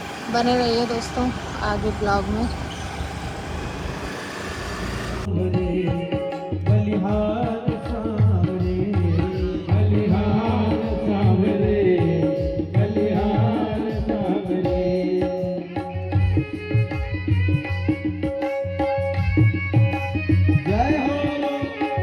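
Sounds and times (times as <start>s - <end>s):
tabla hand drumming: 5.2s - 22.0s.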